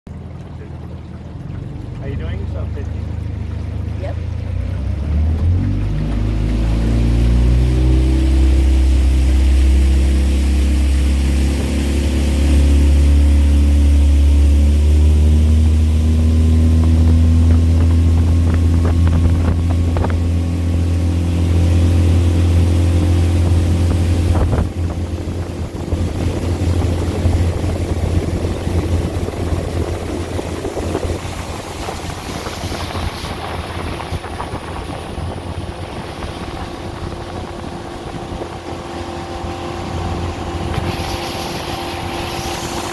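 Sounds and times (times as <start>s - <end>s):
outboard motor running: 0.1s - 42.9s
rushing noise: 39.4s - 42.9s.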